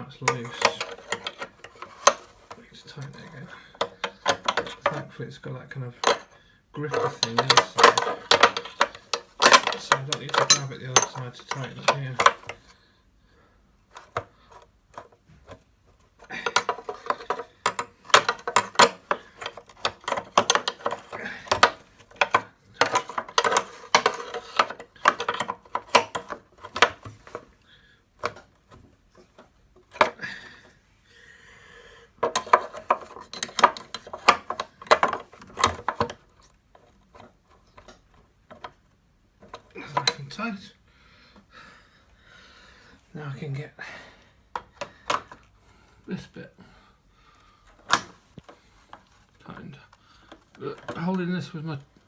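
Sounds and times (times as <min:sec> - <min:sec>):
wrench clicking on bolt: 0:00.3 - 0:02.3, 0:03.8 - 0:05.0, 0:06.0 - 0:06.3, 0:06.9 - 0:12.6, 0:16.4 - 0:27.4.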